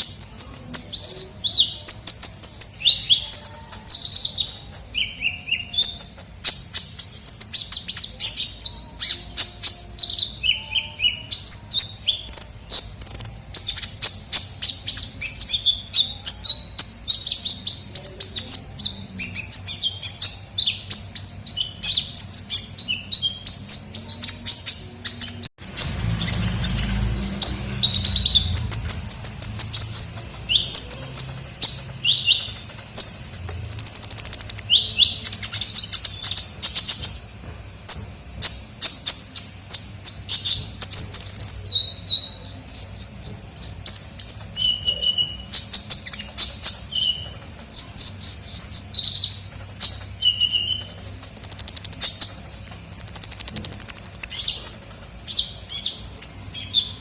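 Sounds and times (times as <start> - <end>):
bird twittering chirps: 0.0 - 37.2, 37.9 - 57.0
thin whistled bird notes: 33.5 - 36.8, 46.9 - 54.7.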